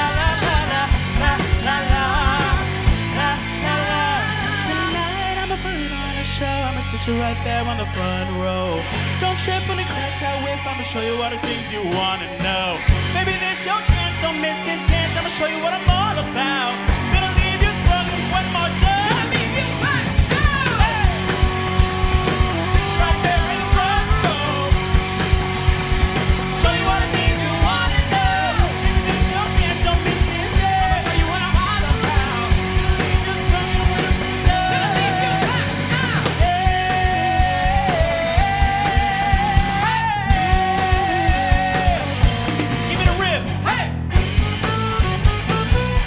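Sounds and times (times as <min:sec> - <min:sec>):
drum beat: 0:00.0 - 0:03.3, 0:20.2 - 0:35.0
lead melody of long notes: 0:00.0 - 0:43.2, 0:44.2 - 0:46.0
bass and guitar: 0:00.0 - 0:46.0.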